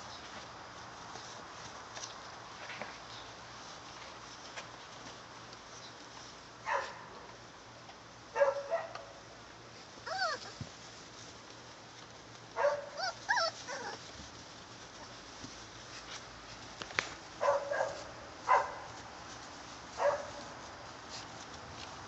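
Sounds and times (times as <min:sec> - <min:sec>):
puppies yipping and whining: 0:10.0 - 0:10.6, 0:12.8 - 0:14.1.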